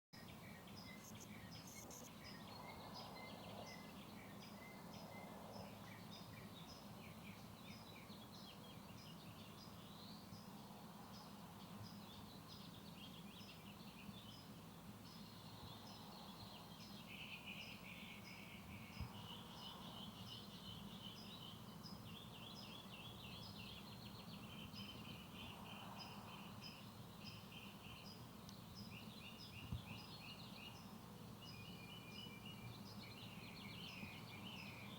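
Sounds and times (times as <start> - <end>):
buzzy trilling calls: 0.9 - 2.2
high chirps: 1.0 - 2.1.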